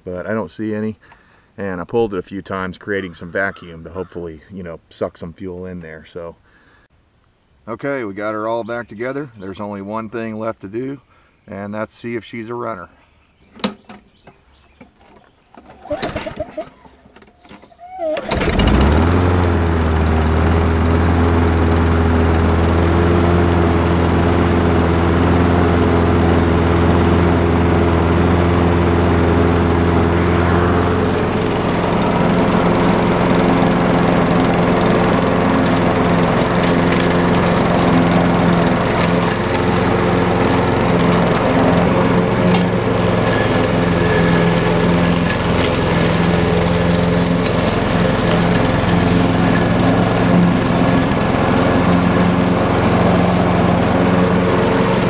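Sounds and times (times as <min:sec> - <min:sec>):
lawnmower engine running: 0:15.0 - 0:55.0.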